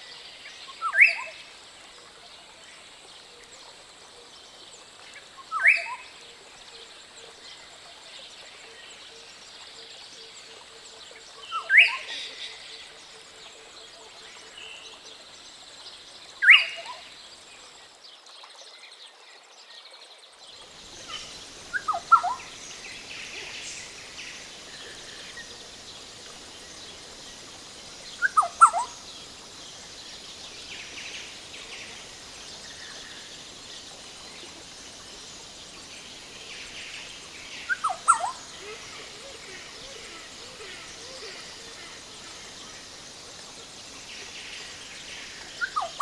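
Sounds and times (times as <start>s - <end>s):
high background hiss: 0.0s - 17.9s, 20.5s - 46.0s
oriole calling: 20.7s - 46.0s.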